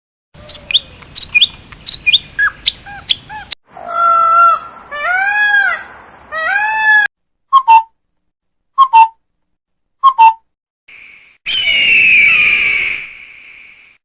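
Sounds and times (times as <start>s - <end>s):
bird chirping: 0.4s - 3.6s
animal calls rising and falling: 0.4s - 7.1s, 11.5s - 13.6s.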